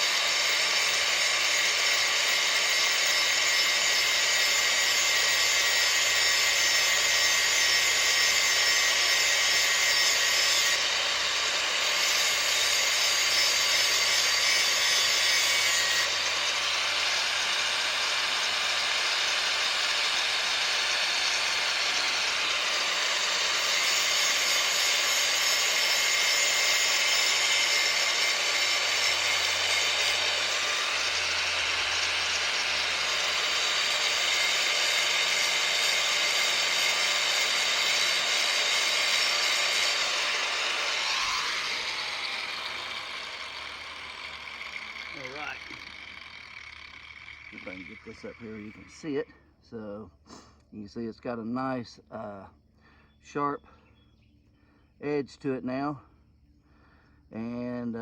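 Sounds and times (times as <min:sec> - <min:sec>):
power grinder grinding metal: 0:00.0 - 0:49.4.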